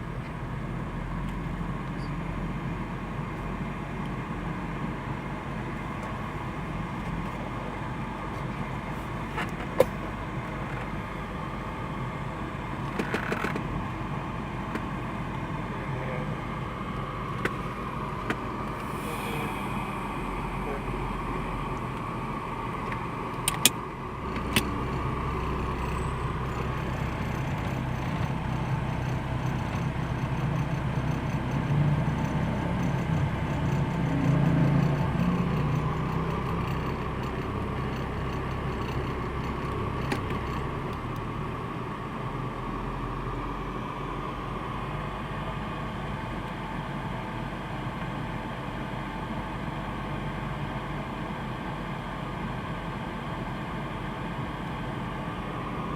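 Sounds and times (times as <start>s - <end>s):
car engine idling roughly: 2.6s - 55.9s
sharp clicks: 22.9s - 23.8s.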